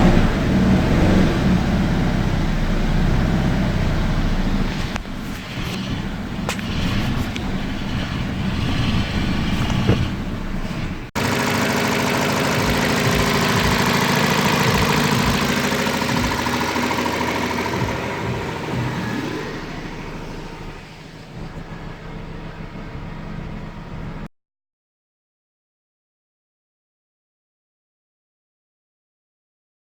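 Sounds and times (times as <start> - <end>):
car engine running: 0.0 - 24.3.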